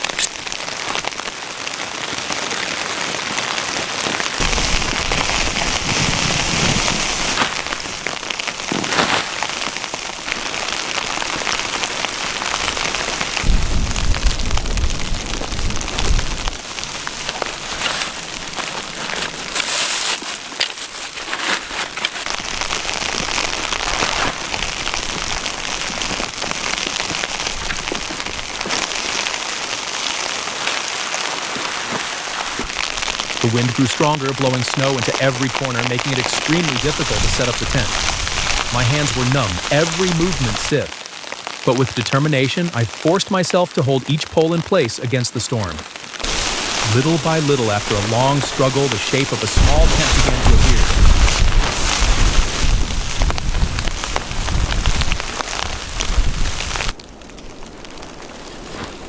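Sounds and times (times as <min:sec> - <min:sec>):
hiss of blown snow: 0:04.4 - 0:07.9, 0:46.2 - 0:55.0
low rumbling wind gusts: 0:04.4 - 0:08.8, 0:09.4 - 0:19.6, 0:36.8 - 0:39.7, 0:49.6 - 0:59.0.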